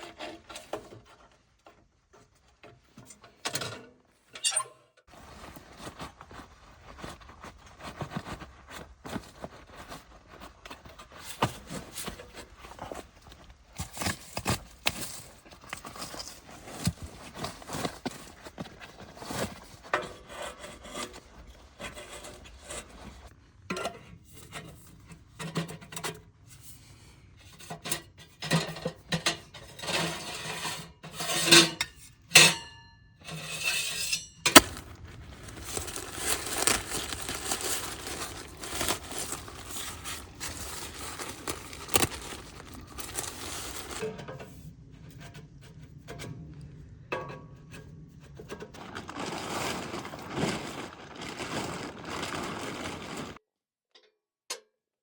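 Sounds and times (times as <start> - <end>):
scraping and rustling: 5.1 - 23.4, 33.3 - 46.3, 48.1 - 53.4.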